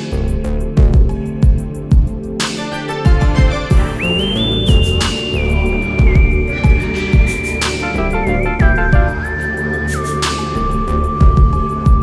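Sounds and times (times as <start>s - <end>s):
kick-drum thumps: 3.1s - 5.2s, 5.9s - 9.4s, 11.2s - 12.0s
held tones: 3.8s - 11.9s.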